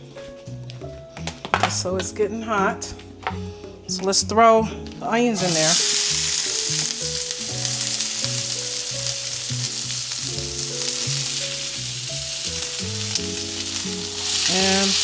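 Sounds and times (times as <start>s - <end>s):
background music: 0.0s - 15.0s
onions sizzling in oil: 5.4s - 15.0s.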